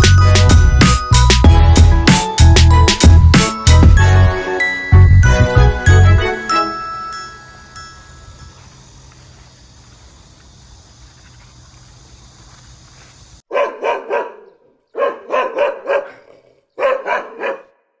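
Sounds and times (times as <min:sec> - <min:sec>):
dog barking: 0:13.5 - 0:18.0.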